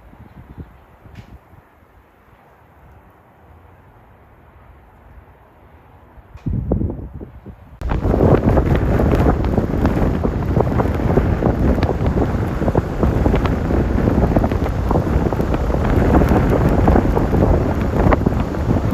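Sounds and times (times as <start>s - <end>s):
wind buffeting the microphone: 0.0s - 1.7s, 6.2s - 18.9s.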